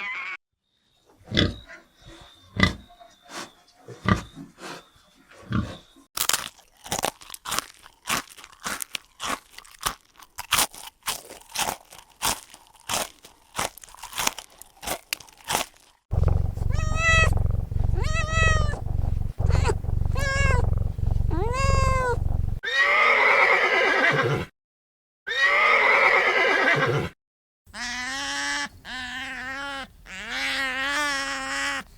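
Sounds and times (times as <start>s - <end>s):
sharp crunching clicks: 6.2s - 22.6s
low steady hum: 16.1s - 22.6s
cat meowing: 16.2s - 22.6s.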